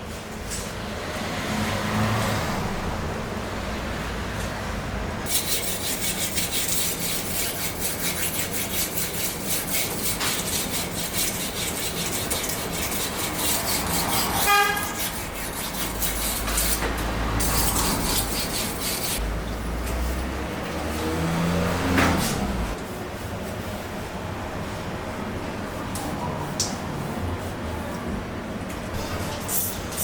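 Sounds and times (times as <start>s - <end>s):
street traffic: 0.0s - 7.3s, 9.9s - 30.0s
rapid even rasping: 5.3s - 19.3s
car horn toot: 14.5s - 15.0s.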